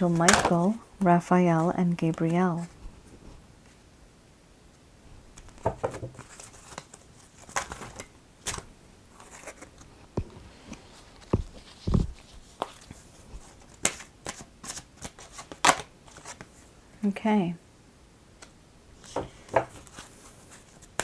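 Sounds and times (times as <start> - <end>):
cards being shuffled: 0.0 - 0.8, 9.2 - 16.6.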